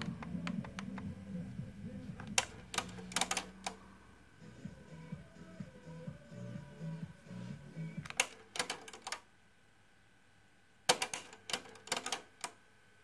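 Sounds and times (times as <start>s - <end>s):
radio music playing: 0.0s - 9.1s
sharp mechanical clicks: 2.3s - 3.8s, 8.0s - 9.2s, 10.9s - 12.6s.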